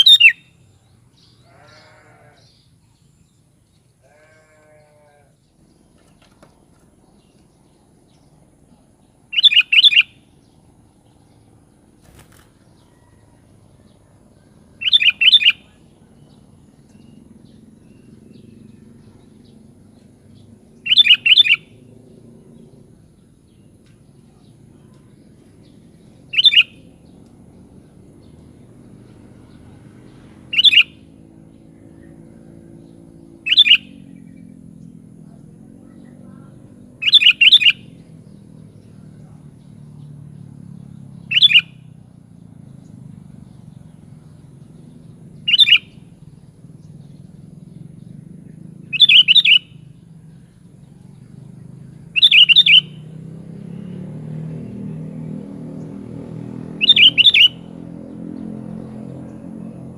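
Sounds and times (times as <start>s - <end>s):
bird calling: 0.0s - 3.2s, 8.7s - 10.6s, 11.2s - 19.7s, 20.4s - 21.8s, 23.2s - 27.2s, 30.3s - 31.2s, 32.8s - 34.3s, 35.3s - 39.4s, 41.3s - 42.0s, 43.8s - 51.0s, 51.8s - 53.3s, 56.6s - 57.9s.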